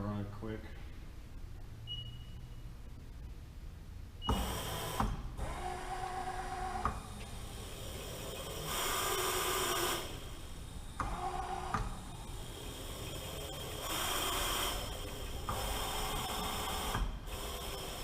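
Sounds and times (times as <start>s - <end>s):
milling machine motor whine: 4.4s - 18.0s.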